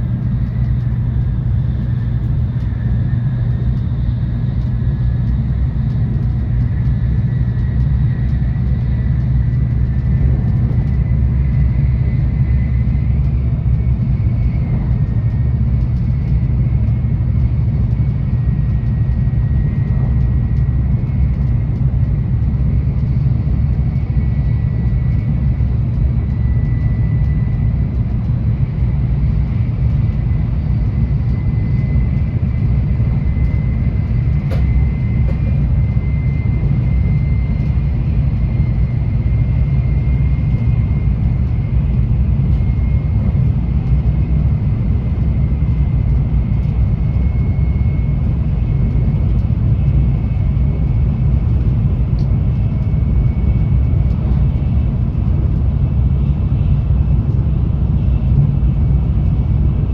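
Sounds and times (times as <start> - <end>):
train rumbling on rails: 0.0 - 59.9.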